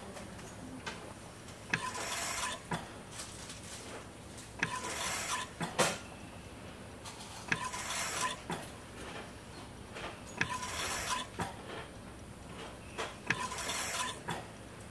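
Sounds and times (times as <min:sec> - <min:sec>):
sharp mechanical clicks: 0:13.2 - 0:14.4.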